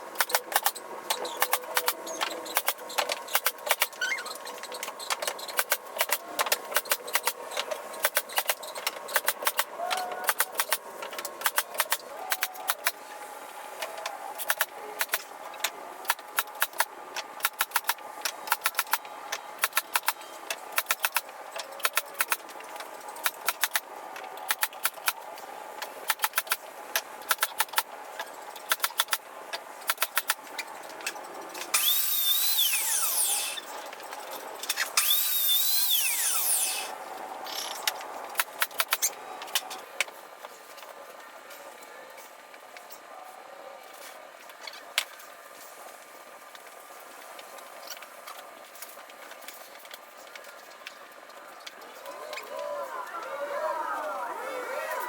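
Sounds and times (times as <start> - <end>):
power saw cutting wood: 31.7 - 33.7, 34.8 - 37.0.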